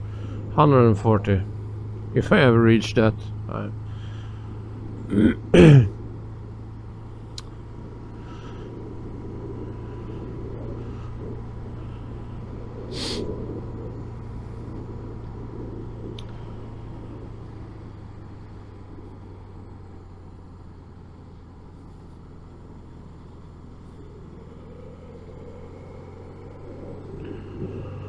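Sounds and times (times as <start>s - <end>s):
motorcycle engine running: 0.0s - 28.0s
short hiss: 12.9s - 13.3s.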